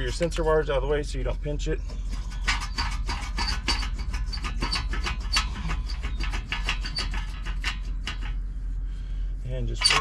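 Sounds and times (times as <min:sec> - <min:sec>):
metal scraping against metal: 0:01.2 - 0:08.6, 0:09.6 - 0:10.0.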